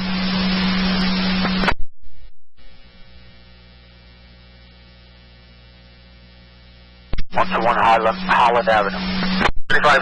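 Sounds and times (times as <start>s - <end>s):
buzzy electrical hum: 0.0s - 10.0s.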